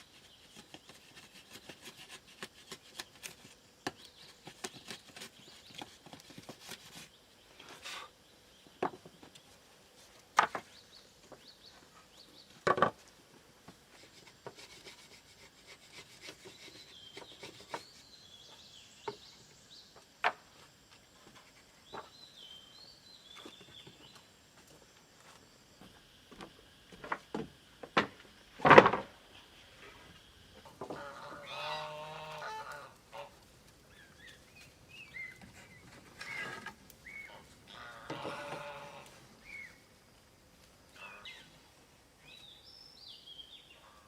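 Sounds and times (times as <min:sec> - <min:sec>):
wood scraping: 0:00.1 - 0:08.1, 0:13.7 - 0:19.4, 0:34.6 - 0:36.9.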